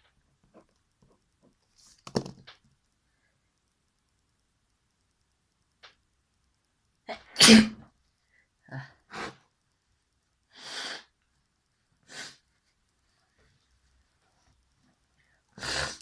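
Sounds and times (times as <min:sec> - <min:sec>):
person sneezing loudly: 0:07.1 - 0:07.8
breath through the nose: 0:15.6 - 0:16.0.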